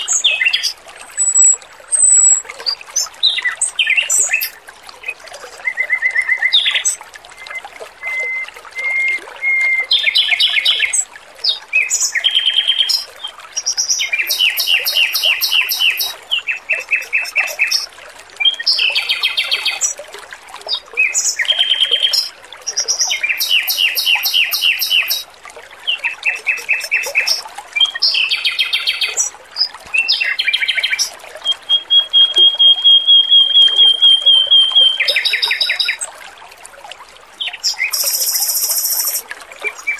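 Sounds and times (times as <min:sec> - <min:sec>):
bird singing trilled phrases: 0:00.0 - 0:20.0, 0:20.7 - 0:36.1, 0:37.4 - 0:39.9
water trickling: 0:00.0 - 0:39.9
bird whistle: 0:01.2 - 0:02.4, 0:14.3 - 0:17.9, 0:26.3 - 0:27.4, 0:30.9 - 0:36.0, 0:37.9 - 0:39.2.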